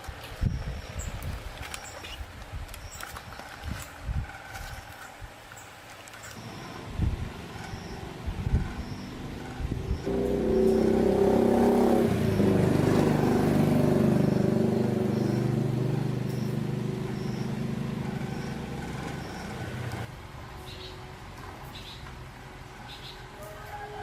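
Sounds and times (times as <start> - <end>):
chainsaw engine running: 7.4 - 20.1.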